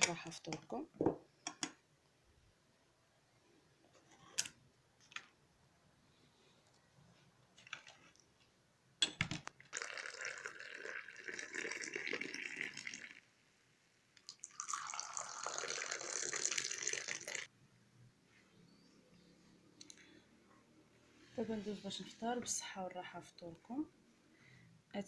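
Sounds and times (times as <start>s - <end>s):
tea pouring into a glass: 9.7s - 13.2s, 14.2s - 17.5s.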